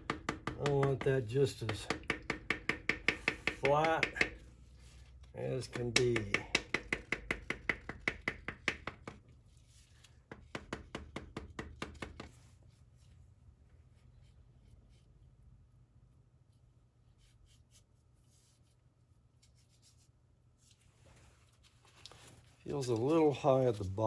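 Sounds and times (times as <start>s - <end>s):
rapid knocks of stick striking: 0.0s - 4.5s, 5.7s - 9.2s.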